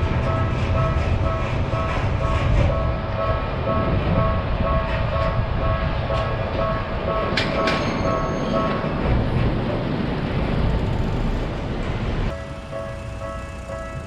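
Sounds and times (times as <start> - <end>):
railroad crossing alarm ringing: 0.0 - 9.1, 12.3 - 14.0
passing train rumble: 0.0 - 14.0.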